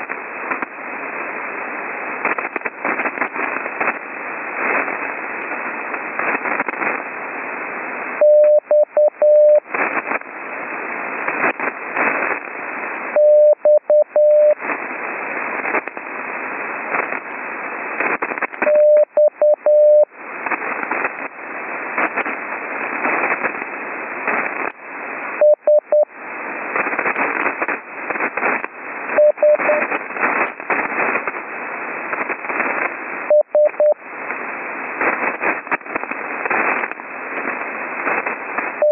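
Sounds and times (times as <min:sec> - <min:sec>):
radio hiss and static crackle: 0:00.0 - 0:38.9
morse code tone: 0:08.2 - 0:09.6, 0:13.2 - 0:14.6, 0:18.7 - 0:20.1, 0:25.4 - 0:26.1, 0:29.2 - 0:29.8, 0:33.3 - 0:34.0.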